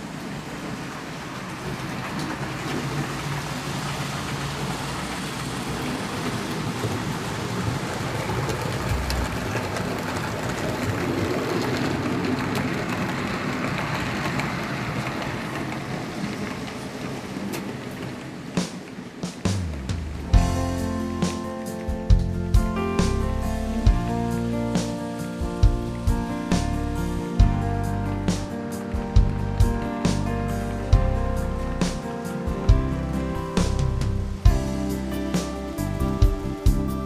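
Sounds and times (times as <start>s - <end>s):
model train wheels rattling: 0.6s - 21.8s.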